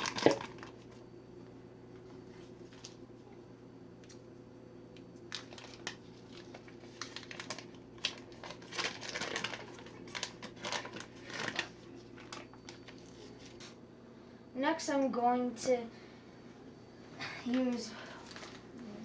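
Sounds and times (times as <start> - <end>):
packaging crinkling and rustling: 0.0 - 1.0, 5.2 - 13.8, 17.7 - 18.8.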